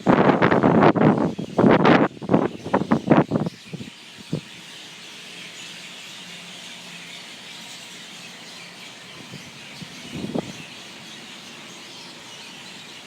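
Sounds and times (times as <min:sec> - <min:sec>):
wind buffeting microphone: 0:00.0 - 0:04.6, 0:09.1 - 0:10.8
flock of birds chirping: 0:00.1 - 0:13.0.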